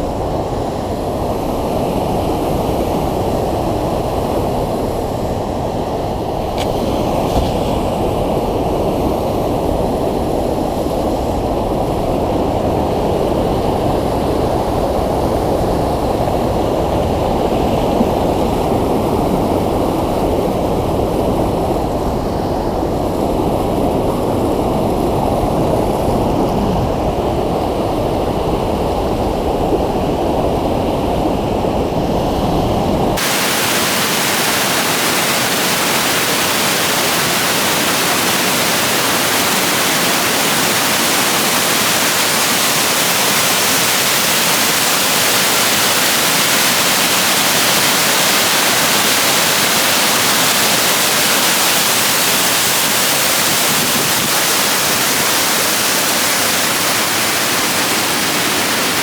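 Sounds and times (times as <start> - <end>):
waterfall roaring: 33.2 - 59.0.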